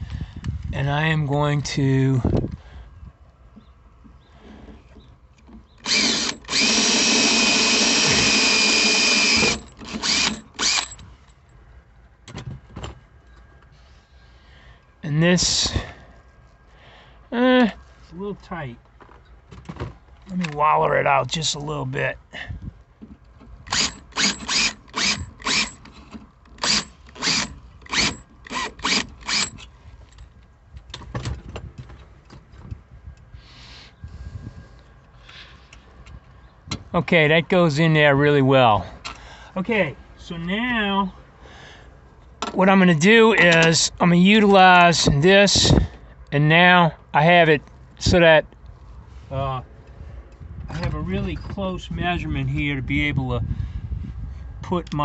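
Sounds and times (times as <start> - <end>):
electric drill whining: 5.8 - 11.0, 23.7 - 25.8, 26.6 - 29.6.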